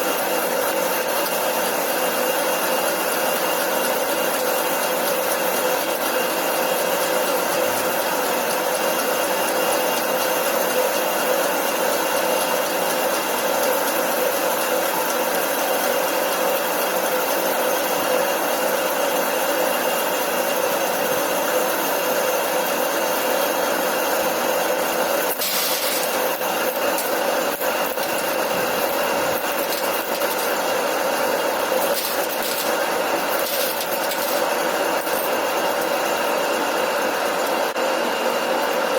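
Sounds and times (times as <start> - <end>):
lathe humming and whining: 0.0 - 38.9
scraping of cutting tool: 31.6 - 35.4.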